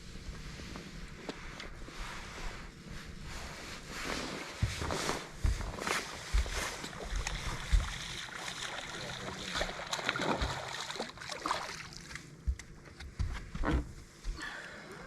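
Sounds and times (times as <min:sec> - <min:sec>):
wind and water hiss: 0:00.0 - 0:13.2
low knocks and thumps on boat: 0:04.6 - 0:08.7.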